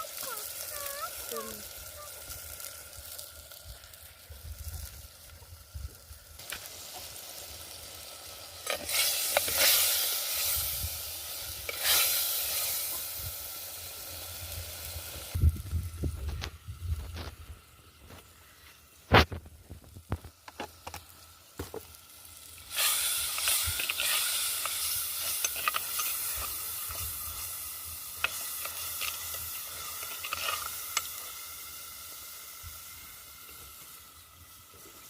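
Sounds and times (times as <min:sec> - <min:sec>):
food sizzling in hot oil: 0:00.0 - 0:35.0
cooking pot and utensils clinking: 0:22.8 - 0:27.4, 0:28.2 - 0:31.2.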